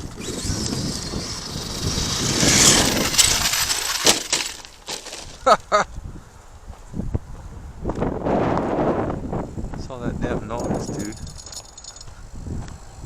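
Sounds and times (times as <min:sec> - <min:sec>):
toy truck on gravel: 0:00.0 - 0:05.7, 0:10.4 - 0:12.1
clattering impacts on rocks: 0:02.4 - 0:05.6.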